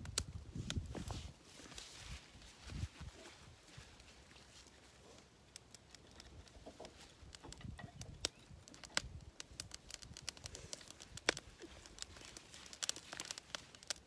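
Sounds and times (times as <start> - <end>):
campfire crackling and popping: 0.0 - 14.0.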